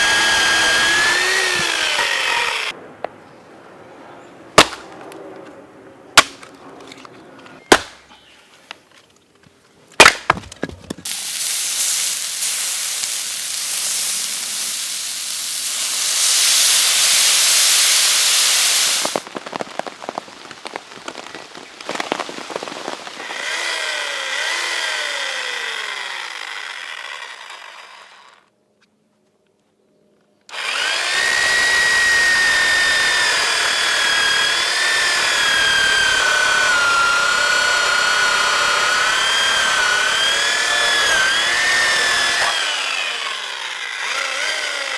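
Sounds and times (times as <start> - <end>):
hatchet striking wood: 4.6 - 4.8, 6.2 - 6.5, 7.7 - 8.0, 10.0 - 10.5
sliding whistling calls: 11.1 - 19.2.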